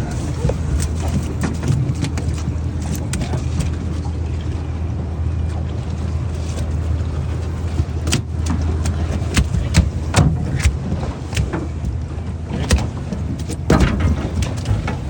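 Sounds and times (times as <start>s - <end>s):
boat motor humming: 0.0s - 15.0s
sharp knocks and slaps: 8.0s - 12.0s, 12.6s - 14.7s.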